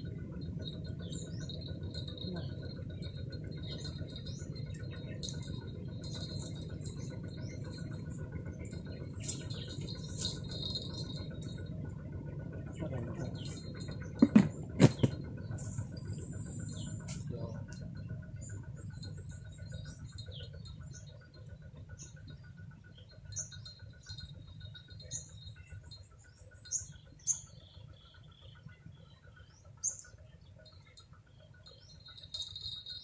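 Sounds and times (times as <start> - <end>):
bird chirps: 0.0 - 33.0.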